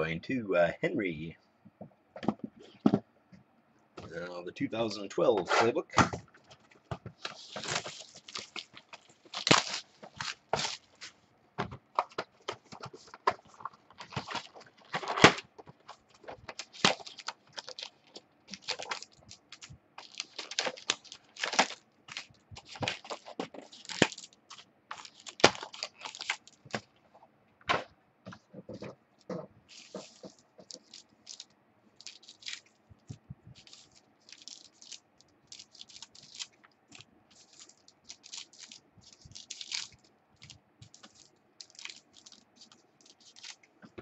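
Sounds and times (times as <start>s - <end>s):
wrappers tearing and crinkling: 7.2s - 11.2s, 12.4s - 26.9s, 29.7s - 32.7s, 33.6s - 43.6s.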